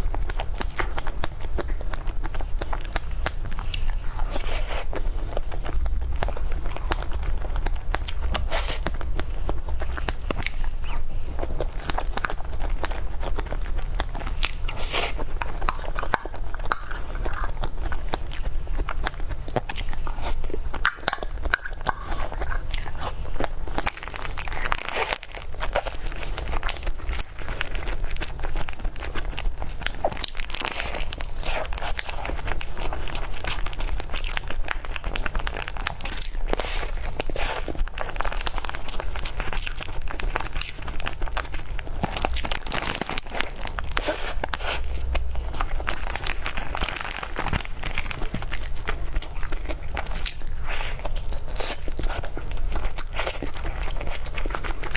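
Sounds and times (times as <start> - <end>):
biting and chewing: 0.0 - 54.9
small crackles: 0.2 - 54.9
wrapper crinkling: 22.2 - 54.9.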